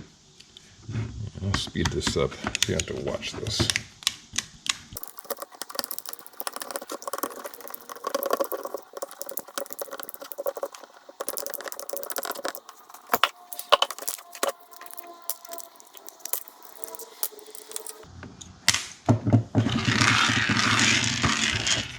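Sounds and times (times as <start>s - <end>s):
screws clicking and rattling: 5.0s - 18.1s.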